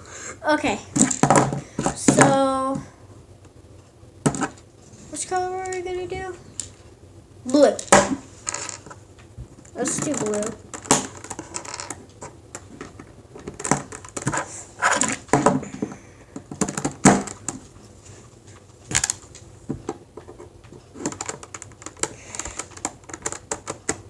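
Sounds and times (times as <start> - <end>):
plastic cube pieces clicking: 21.0 - 24.0.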